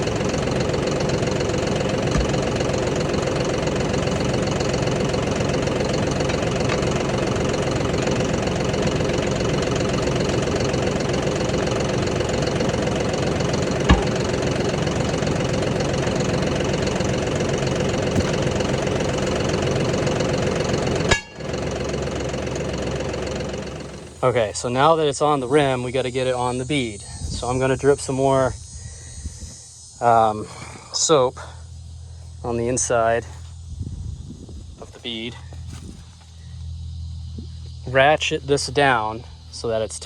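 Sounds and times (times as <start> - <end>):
engine idling: 0.0 - 40.0.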